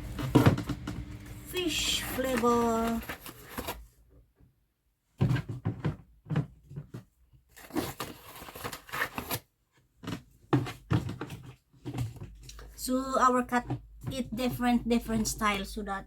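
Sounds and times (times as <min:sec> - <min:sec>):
packaging rustling and crinkling: 0:00.0 - 0:04.0, 0:07.5 - 0:09.4.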